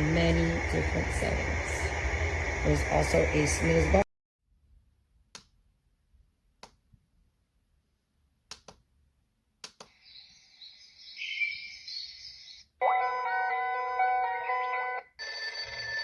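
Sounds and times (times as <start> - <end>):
faint high chirping: 9.9 - 12.7
electronic alarm ringing: 12.8 - 16.0.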